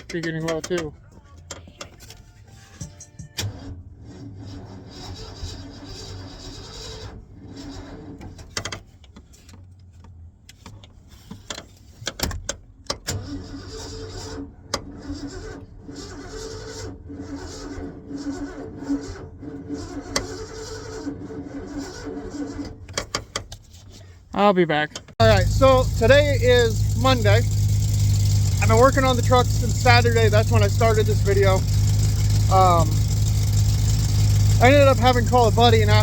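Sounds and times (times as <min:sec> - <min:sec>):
engine starter cranking: 0:25.2 - 0:36.0.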